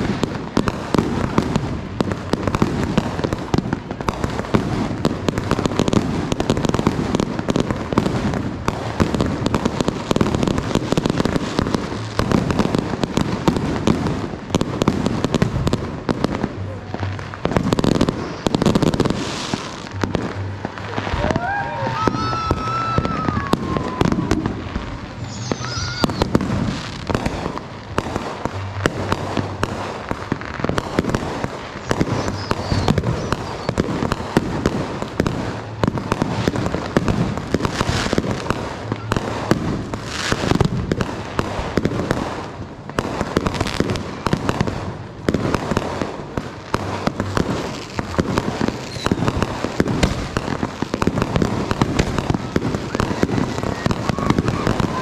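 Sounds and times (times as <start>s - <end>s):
fireworks banging and crackling: 0.0s - 55.0s
falling whistle: 32.1s - 34.3s.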